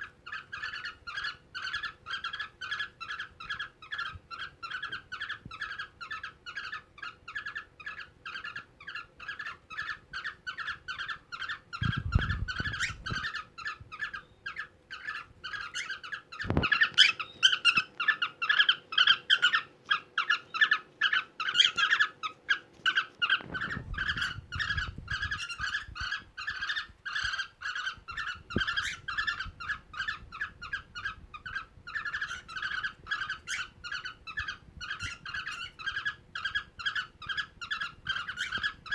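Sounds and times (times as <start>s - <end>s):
cockatiel chirping: 0.0s - 38.9s.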